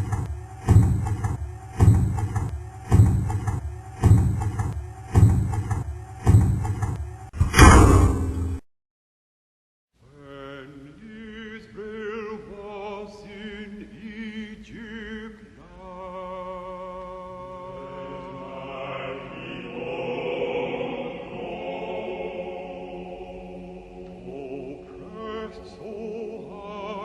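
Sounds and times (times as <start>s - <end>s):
operatic choral singing: 10.2s - 27.0s.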